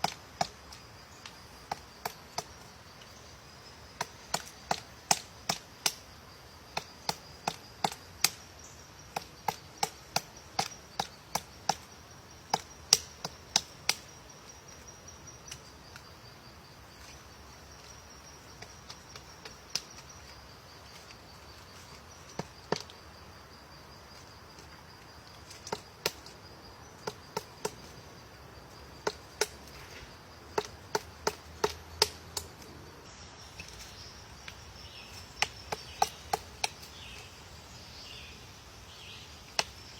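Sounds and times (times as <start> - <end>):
high insect buzz: 0.0 - 39.9
woodpecker knocking on tree: 4.0 - 6.0, 6.7 - 8.4, 9.1 - 16.1, 17.8 - 23.2, 24.1 - 28.0, 28.9 - 29.8, 30.5 - 32.5, 35.2 - 37.3.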